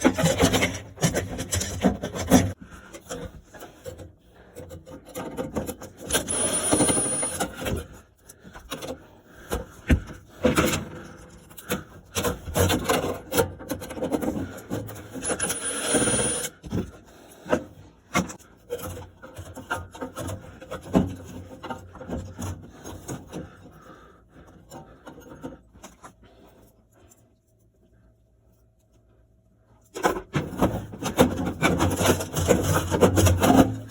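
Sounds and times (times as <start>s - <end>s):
rubbing and scraping: 0.0s - 6.4s, 30.0s - 33.9s.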